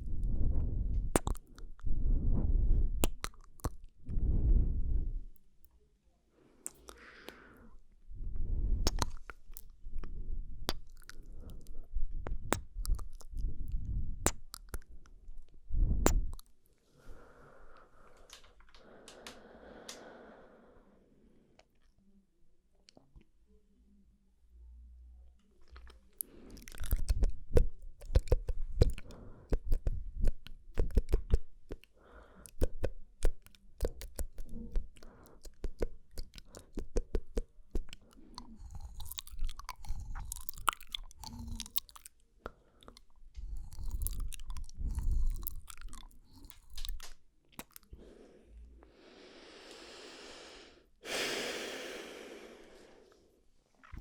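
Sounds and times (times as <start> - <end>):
wet mouth clicks and lip smacks: 0.0 - 4.3, 6.6 - 7.4, 8.4 - 16.6, 25.6 - 48.0.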